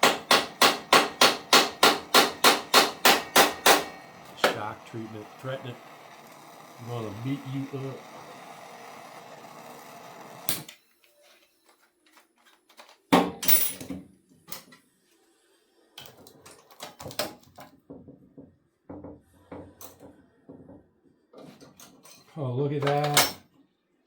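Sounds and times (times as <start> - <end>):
hand tools knocking on metal: 0.0 - 5.4.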